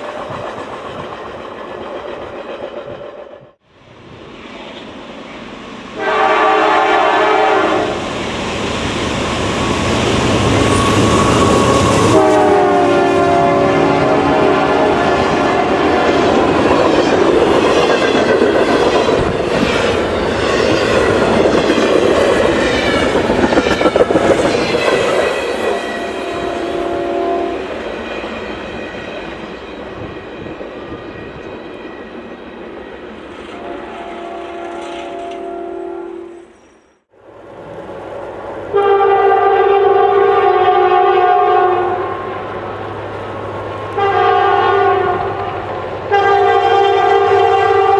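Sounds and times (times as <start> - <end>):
train engines and wheels rumbling: 0.0 - 47.9
locomotive air horn blasts: 6.0 - 8.0, 10.9 - 16.4, 25.8 - 27.7, 33.6 - 36.6, 38.7 - 42.4, 44.0 - 45.5, 46.1 - 47.9.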